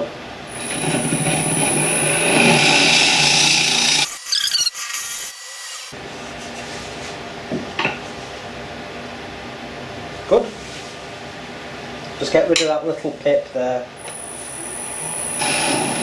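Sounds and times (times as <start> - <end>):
lathe running: 0.5 - 6.0, 14.4 - 16.0
lathe tool cutting wood: 0.6 - 6.0.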